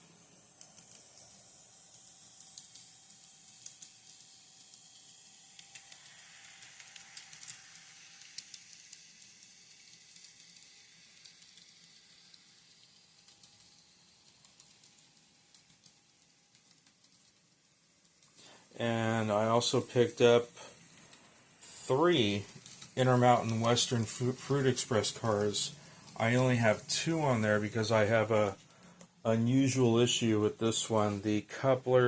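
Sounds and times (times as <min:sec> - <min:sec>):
model train running on track: 0:05.6 - 0:13.1.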